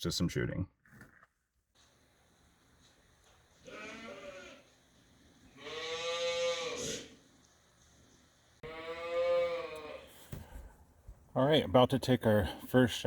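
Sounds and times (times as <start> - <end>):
farm animal bleating: 3.6 - 4.7, 5.6 - 7.2, 8.6 - 10.1.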